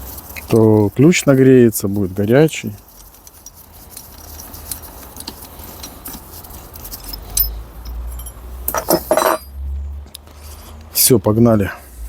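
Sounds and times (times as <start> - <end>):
metal tools clinking and rattling: 0.0 - 9.6.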